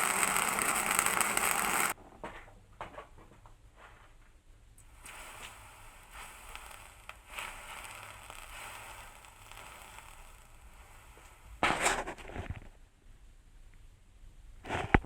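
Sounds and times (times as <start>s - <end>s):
welder crackling: 0.0s - 2.0s, 4.8s - 12.7s.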